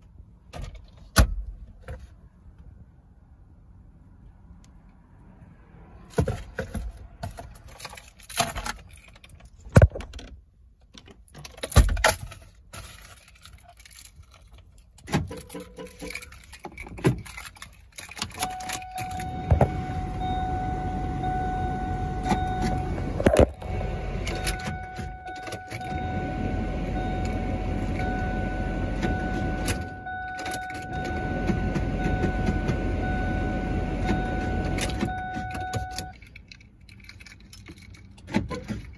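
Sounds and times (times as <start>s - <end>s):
car keys jangling: 6.4s - 38.9s
low hum with high whine: 17.2s - 37.9s.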